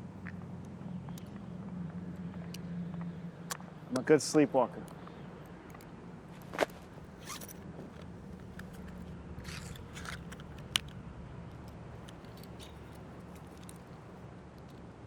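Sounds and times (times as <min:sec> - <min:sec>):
low steady hum: 0:00.0 - 0:15.0
scraping rustles: 0:06.2 - 0:10.9.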